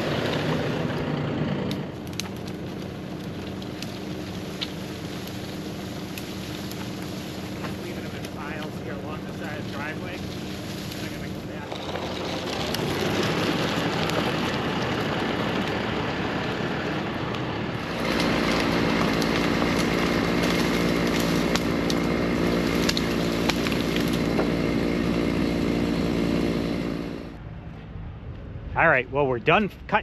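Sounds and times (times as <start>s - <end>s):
engine running: 0.0s - 29.0s.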